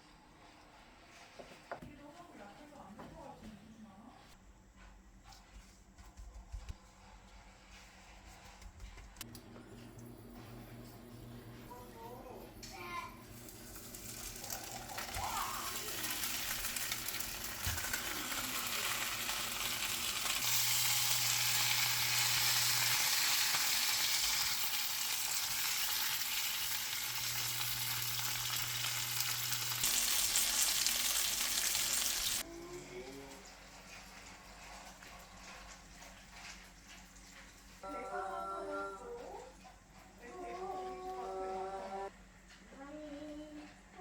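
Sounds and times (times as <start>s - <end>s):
fish sizzling in oil: 13.2s - 32.4s.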